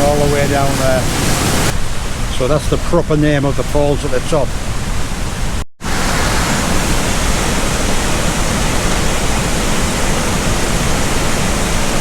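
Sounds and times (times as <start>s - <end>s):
waterfall rushing: 0.0s - 2.2s, 5.4s - 12.0s.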